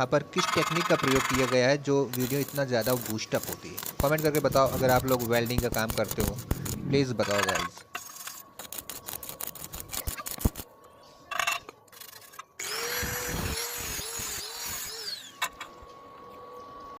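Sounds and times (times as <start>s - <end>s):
power tool motor whine: 12.0s - 16.9s.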